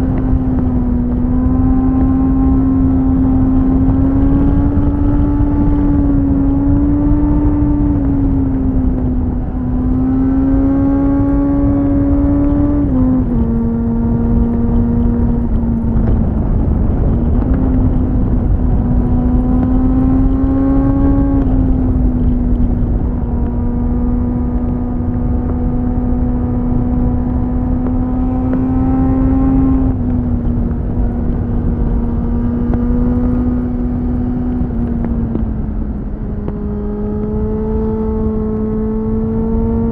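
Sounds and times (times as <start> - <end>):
wind rushing on microphone: 0.0 - 39.9.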